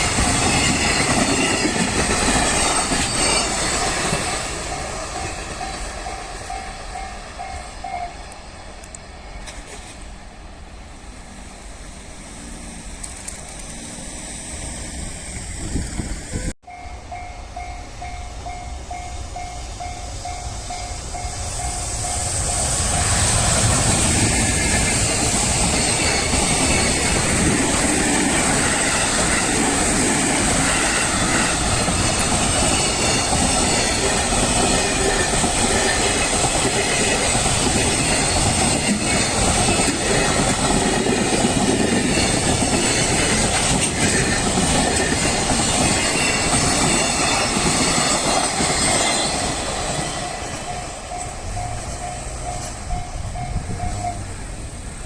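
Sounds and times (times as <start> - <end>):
level-crossing warning bell: 0.0 - 9.7, 16.4 - 54.8
wheels clattering on rails: 0.0 - 10.1, 19.6 - 55.0
train rumble: 0.0 - 55.0.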